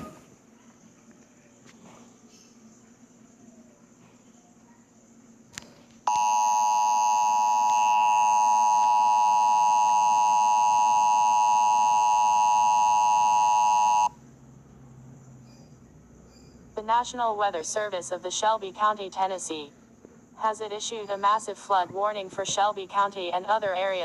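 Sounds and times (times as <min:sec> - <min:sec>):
steady two-tone alarm: 0:06.1 - 0:14.2.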